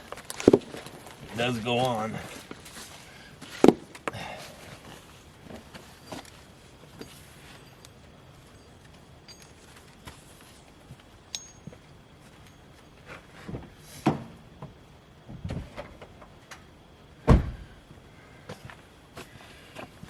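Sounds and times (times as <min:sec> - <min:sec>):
knocks and clinks: 0:08.5 - 0:09.8, 0:11.3 - 0:11.8.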